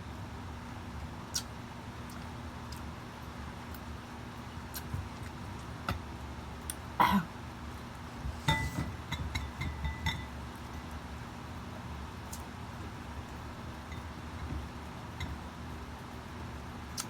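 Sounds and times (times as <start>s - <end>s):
utensil clinking against a dish: 8.3s - 11.0s, 13.8s - 15.4s.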